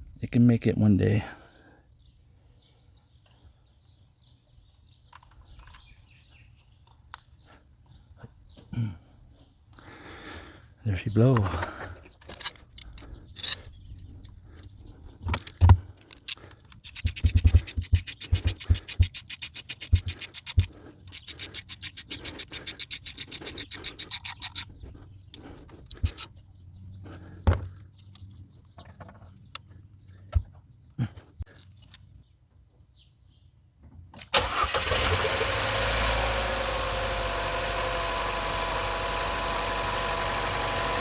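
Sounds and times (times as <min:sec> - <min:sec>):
rapid even clicking: 0:15.5 - 0:24.7.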